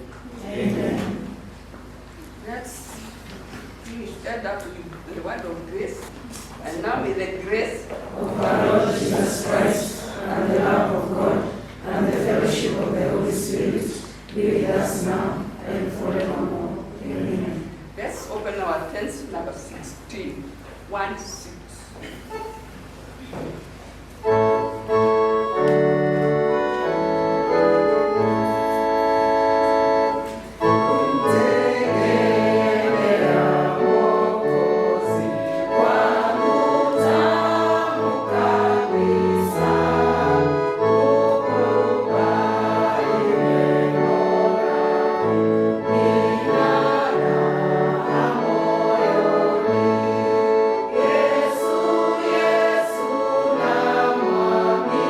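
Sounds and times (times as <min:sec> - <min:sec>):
voices singing together: 0:00.4 - 0:01.4, 0:08.1 - 0:17.9, 0:30.6 - 0:55.0
organ-like keyboard chords: 0:08.1 - 0:18.0, 0:24.0 - 0:55.0.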